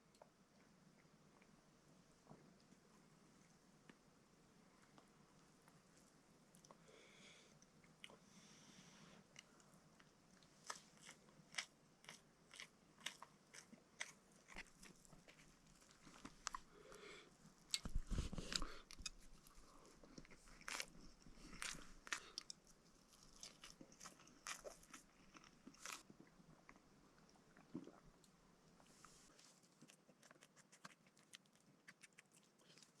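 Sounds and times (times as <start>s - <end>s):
crunchy biting and chewing: 10.6s - 16.6s, 20.1s - 26.1s, 29.8s - 33.0s.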